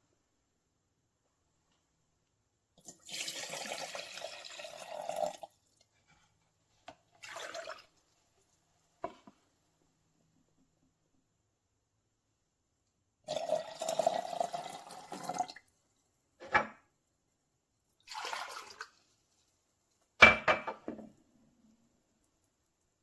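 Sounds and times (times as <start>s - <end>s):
coffee maker gurgling and hissing: 2.8s - 6.0s, 7.1s - 8.0s, 13.2s - 15.7s, 18.0s - 19.1s.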